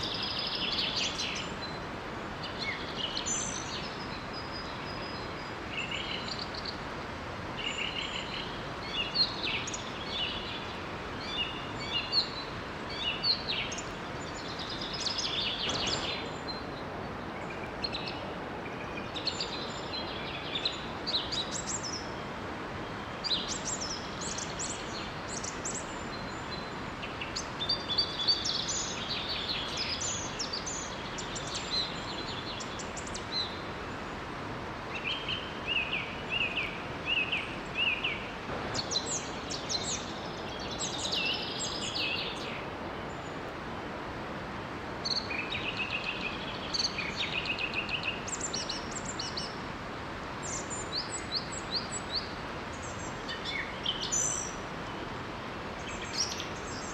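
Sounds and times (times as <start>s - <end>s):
water rushing from waterfall: 4.8s - 56.9s
birds singing and chirping: 7.6s - 16.8s.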